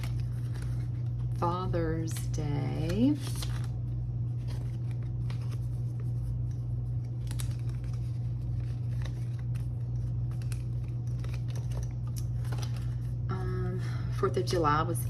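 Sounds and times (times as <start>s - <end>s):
paper rustling: 0.0s - 13.2s
low hum: 0.0s - 15.0s.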